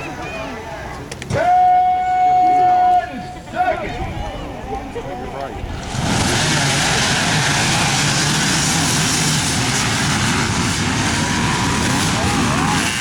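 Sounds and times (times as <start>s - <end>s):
racing engines at high revs: 5.6s - 13.0s.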